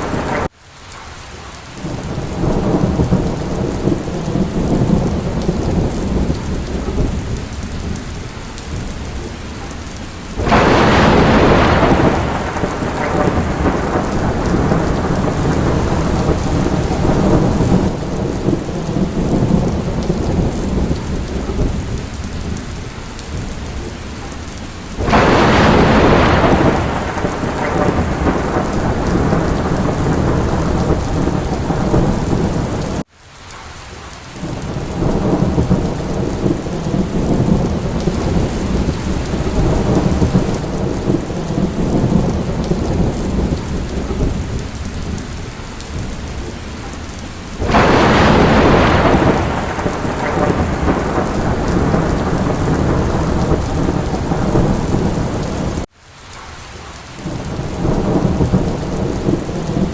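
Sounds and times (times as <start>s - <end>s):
thunderclaps rumbling: 0.0s - 0.5s, 1.8s - 33.1s, 34.4s - 55.9s, 57.2s - 59.9s
steady rain: 0.0s - 59.9s.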